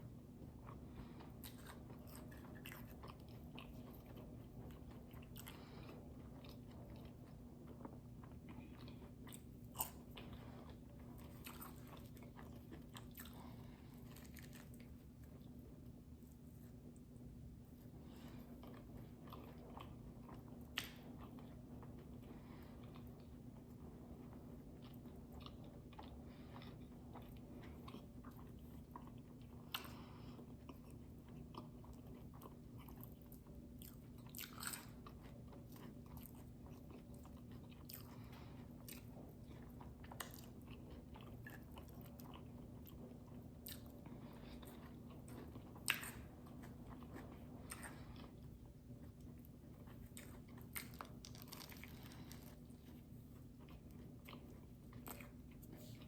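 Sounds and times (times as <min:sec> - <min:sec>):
chewing and biting food: 0:00.0 - 0:56.0
food crunches: 0:11.2 - 0:15.5, 0:33.8 - 0:38.2, 0:49.2 - 0:56.0.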